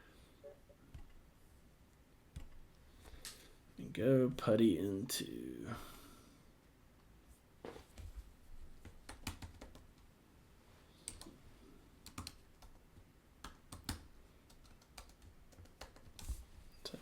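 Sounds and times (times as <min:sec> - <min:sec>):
computer keyboard keystrokes: 0:08.8 - 0:10.0, 0:11.1 - 0:11.3, 0:12.0 - 0:12.8, 0:13.4 - 0:16.3.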